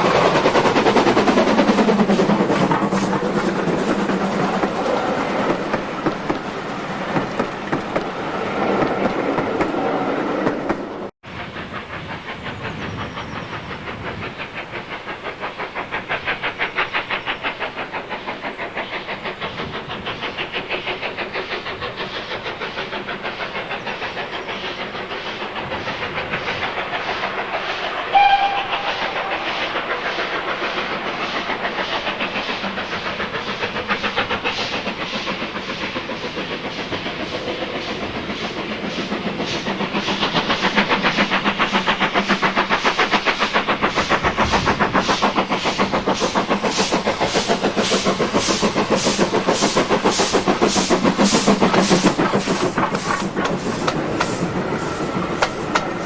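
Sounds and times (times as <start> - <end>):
steam locomotive exhaust beats: 0.0 - 56.0
steam whistle blast: 28.1 - 29.8.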